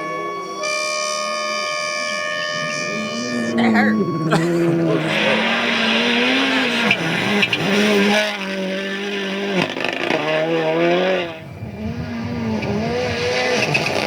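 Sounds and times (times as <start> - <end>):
rally car engine revving: 0.0 - 14.0.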